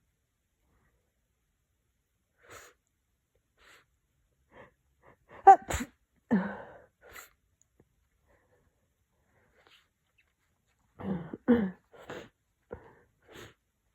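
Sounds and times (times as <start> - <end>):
person sneezing: 5.4 - 6.0.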